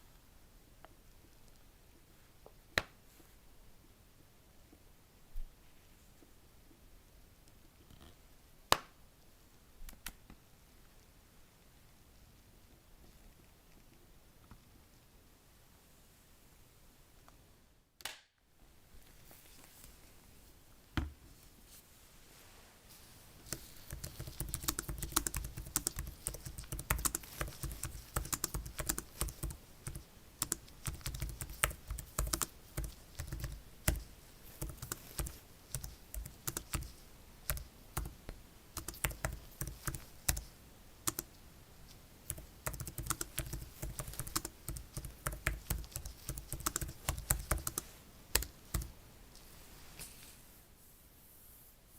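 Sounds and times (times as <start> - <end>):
rapid tapping and clicking: 23.5 - 38.2, 38.8 - 40.5, 42.3 - 47.8.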